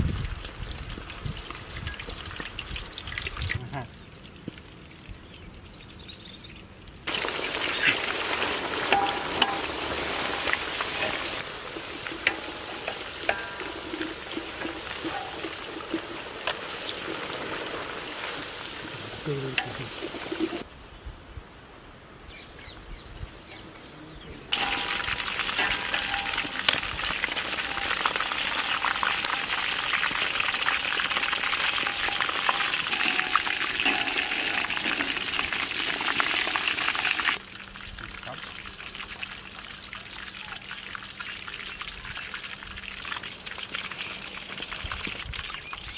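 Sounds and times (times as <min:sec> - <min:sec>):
food sizzling in a pan: 0:07.1 - 0:20.7, 0:24.5 - 0:41.8, 0:43.0 - 0:45.2.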